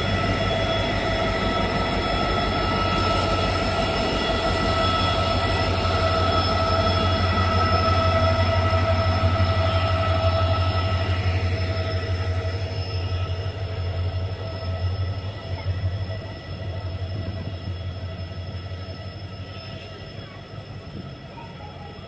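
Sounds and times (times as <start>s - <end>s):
faint steady tones: 0.0s - 22.0s
train rumble: 0.0s - 22.0s.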